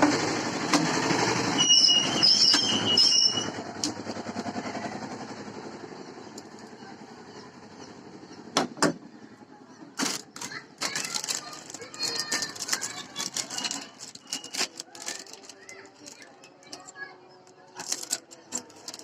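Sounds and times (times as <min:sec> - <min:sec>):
high squeal: 0:01.4 - 0:03.7.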